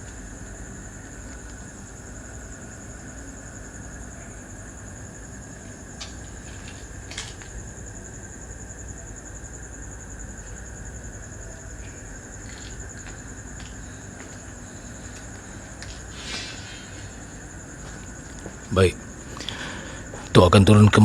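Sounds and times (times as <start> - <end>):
crickets chirring: 0.0 - 21.0.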